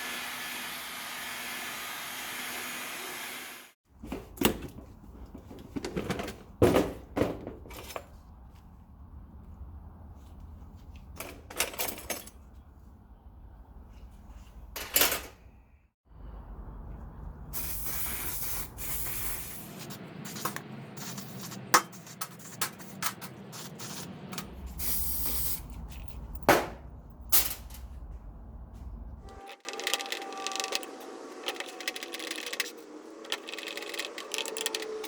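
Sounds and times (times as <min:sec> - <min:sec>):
hiss: 0:17.6 - 0:20.0, 0:24.8 - 0:25.6.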